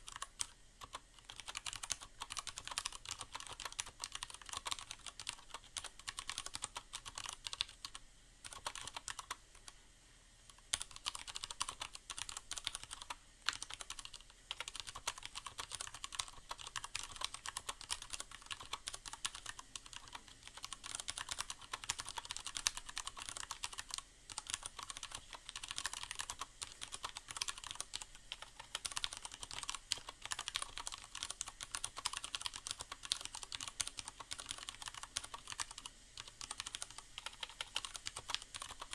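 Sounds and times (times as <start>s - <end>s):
mechanical keyboard keystroke clacks: 0.1s - 9.3s.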